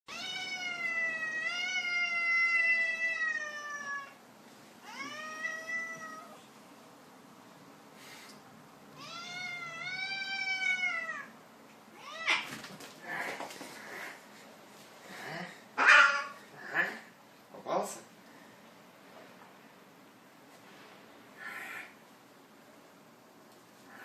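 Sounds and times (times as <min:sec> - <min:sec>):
cat yowling: 0:00.1 - 0:04.2, 0:04.8 - 0:06.4, 0:09.0 - 0:11.4, 0:12.0 - 0:12.5, 0:15.8 - 0:16.4.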